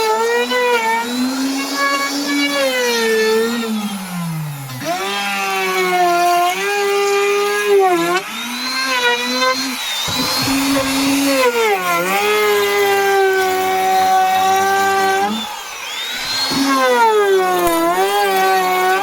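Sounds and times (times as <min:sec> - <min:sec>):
router cutting wood: 0:00.0 - 0:19.0.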